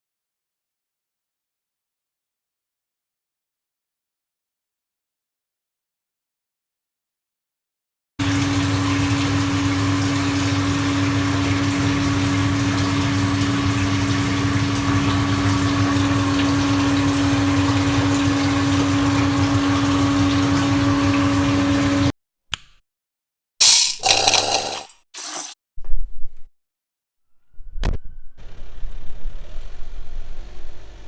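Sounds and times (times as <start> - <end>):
pump running: 8.2 - 22.1, 23.6 - 25.5.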